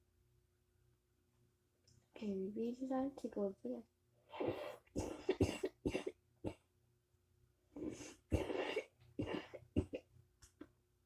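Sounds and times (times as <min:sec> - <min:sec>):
person coughing: 0:05.0 - 0:06.7, 0:08.3 - 0:10.1.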